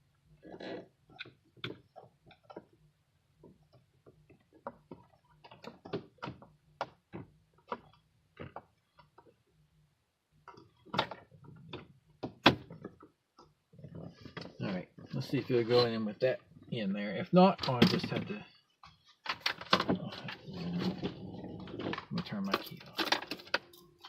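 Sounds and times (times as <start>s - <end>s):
clicks and knocks of dash parts: 17.6s - 20.4s.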